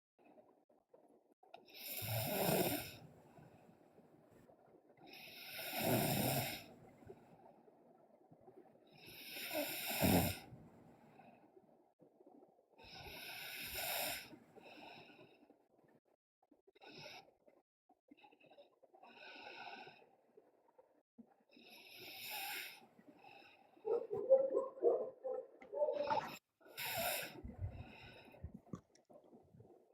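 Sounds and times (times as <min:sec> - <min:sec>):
person snoring: 0:01.8 - 0:03.0, 0:09.2 - 0:10.4, 0:25.9 - 0:28.1.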